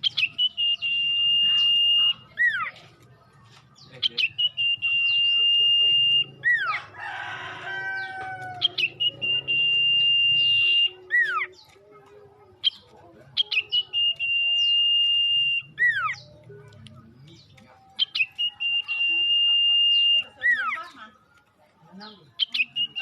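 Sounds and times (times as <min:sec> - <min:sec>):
songbird singing whistled phrase: 0:00.0 - 0:02.8, 0:03.4 - 0:06.8, 0:08.6 - 0:11.8, 0:12.6 - 0:21.0, 0:22.4 - 0:23.0
harsh bird call with falling notes: 0:03.8 - 0:11.8, 0:12.6 - 0:16.4.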